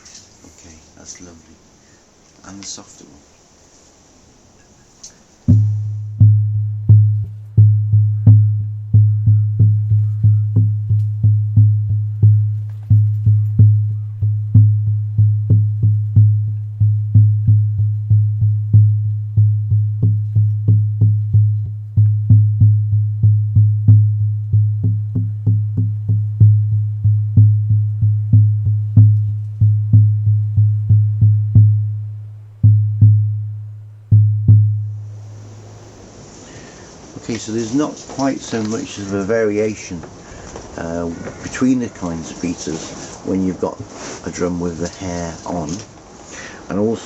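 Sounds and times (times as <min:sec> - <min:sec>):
frame drum beaten: 0:05.4 - 0:36.1.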